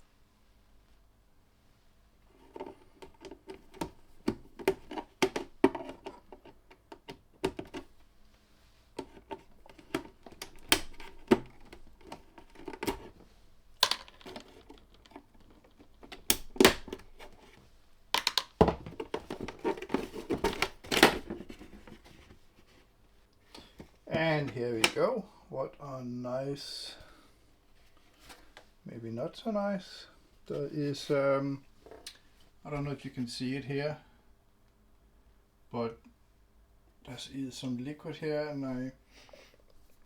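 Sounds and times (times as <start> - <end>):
clicks and rattles of plastic casing: 2.5 - 7.9, 9.0 - 13.2, 13.8 - 17.5, 18.2 - 22.2.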